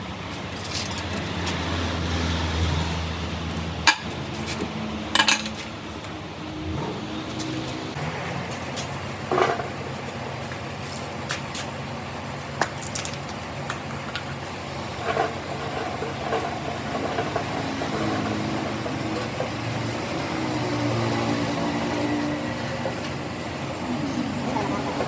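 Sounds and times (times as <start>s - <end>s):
engine running: 0.0s - 25.0s
metallic clinks and knocks: 3.9s - 6.2s.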